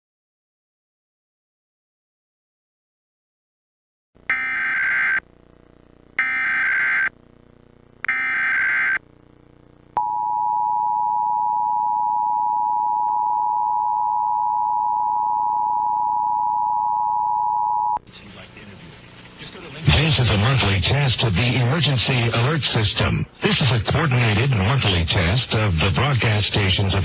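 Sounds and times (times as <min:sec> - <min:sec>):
screechy data bursts: 0:06.2 - 0:07.1, 0:08.1 - 0:09.0.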